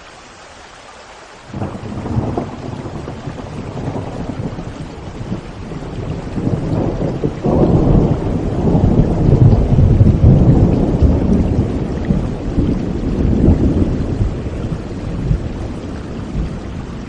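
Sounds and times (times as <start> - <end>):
water noise: 0.0 - 17.0.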